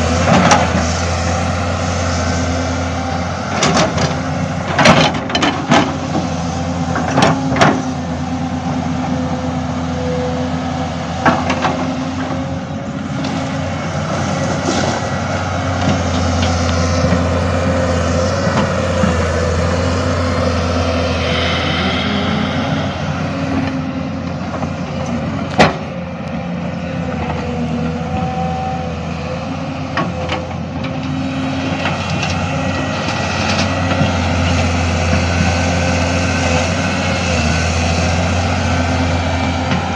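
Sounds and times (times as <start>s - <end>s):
excavator engine running: 0.0s - 39.9s
thin whine: 16.6s - 25.2s.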